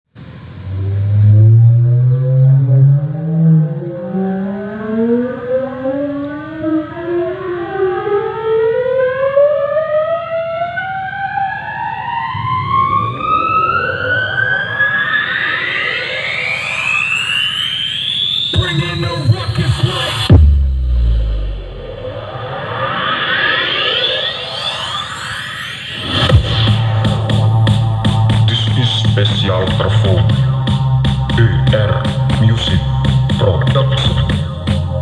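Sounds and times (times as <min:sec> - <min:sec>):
rising synth sweep: 0:00.1 - 0:35.0
bass hit: 0:00.2 - 0:03.4, 0:18.6 - 0:22.4, 0:26.0 - 0:35.0.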